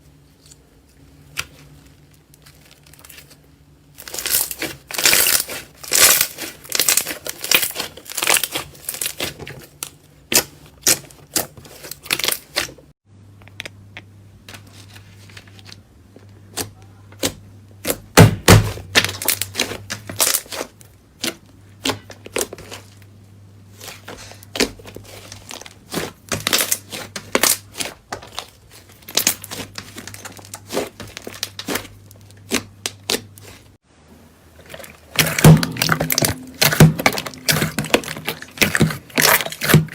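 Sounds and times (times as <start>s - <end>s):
slime crackling and popping: 2.3s - 12.8s, 17.8s - 23.0s, 23.8s - 33.7s, 34.6s - 39.9s.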